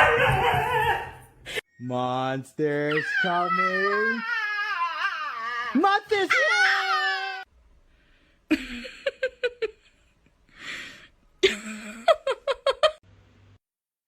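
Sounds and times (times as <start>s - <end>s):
person breathing in: 10.5s - 11.2s.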